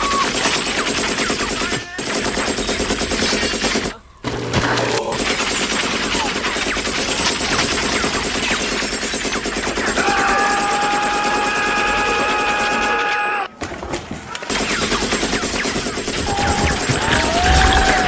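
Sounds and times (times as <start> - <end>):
automatic machine-gun fire: 4.2 - 11.6, 14.5 - 18.0.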